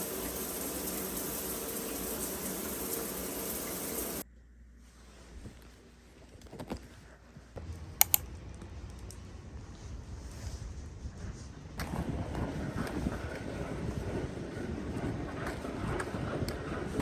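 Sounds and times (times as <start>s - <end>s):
steady hiss: 0.0s - 4.2s
sharp clicks: 8.0s - 8.3s.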